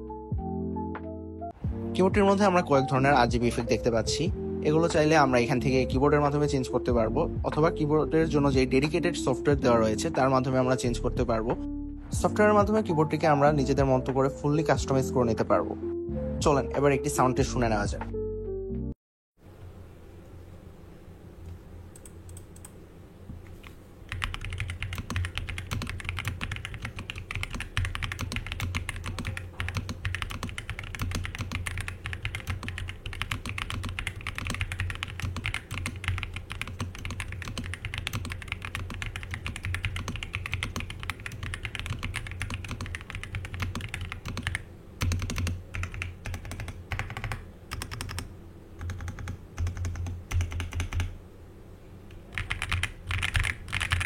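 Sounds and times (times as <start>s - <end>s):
mechanical keyboard typing: 23.6s - 51.2s, 52.3s - 54.0s.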